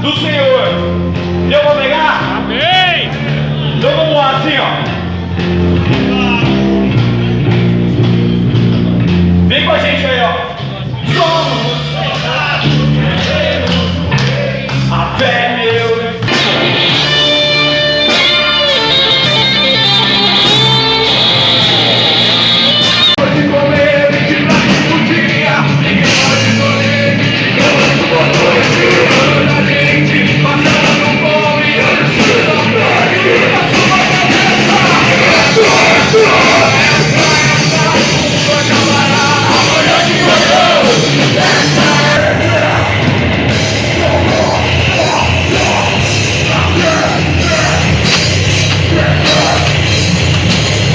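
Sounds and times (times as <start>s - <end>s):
distorted electric guitars: 0.0s - 50.9s
drums: 0.0s - 50.9s
person singing: 11.1s - 48.1s, 48.8s - 50.1s.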